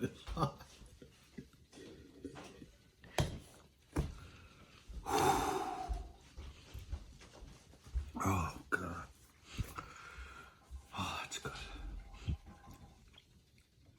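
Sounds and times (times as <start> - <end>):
man gasping and blowing breath: 5.0 - 6.2.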